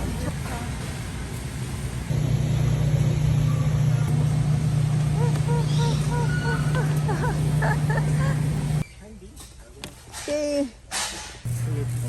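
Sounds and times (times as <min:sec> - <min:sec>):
car engine rumbling: 0:00.0 - 0:08.8.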